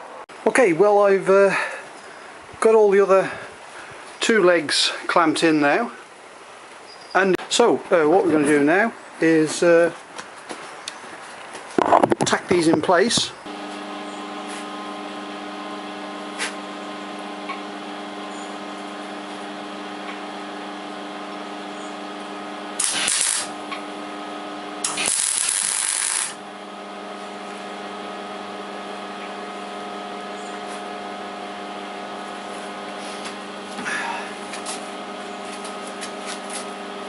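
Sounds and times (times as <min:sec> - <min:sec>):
steady electrical hum: 0:13.4 - 0:37.0
welding arc crackle: 0:22.2 - 0:28.6.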